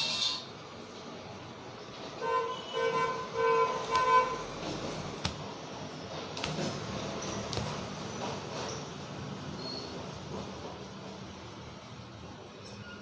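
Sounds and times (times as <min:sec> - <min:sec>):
street traffic noise: 0:00.0 - 0:13.0
vehicle horn honking: 0:02.2 - 0:04.5.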